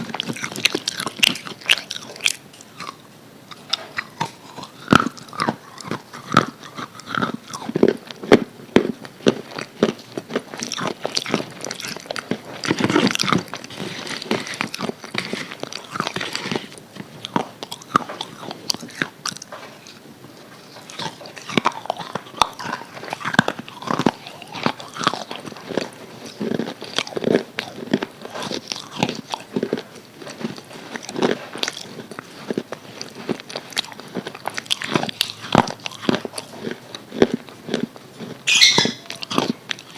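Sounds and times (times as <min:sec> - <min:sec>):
fried chicken crunching: 0:00.0 - 0:39.9
wet chewing: 0:00.0 - 0:39.9.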